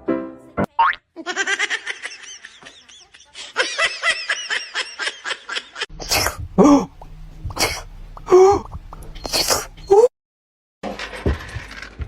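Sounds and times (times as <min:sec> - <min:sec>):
rapid rhythmic laughter: 0:01.3 - 0:05.9
low hum: 0:06.0 - 0:10.0
breathy bursts: 0:06.0 - 0:10.1.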